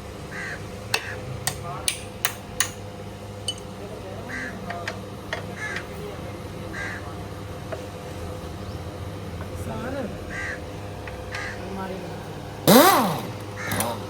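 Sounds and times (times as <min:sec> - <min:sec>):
crow cawing: 0:00.3 - 0:01.2, 0:04.3 - 0:04.7, 0:05.6 - 0:05.9, 0:06.7 - 0:07.2, 0:10.3 - 0:11.7, 0:13.6 - 0:13.8
hand tools knocking on metal: 0:00.9 - 0:03.8, 0:04.6 - 0:05.9.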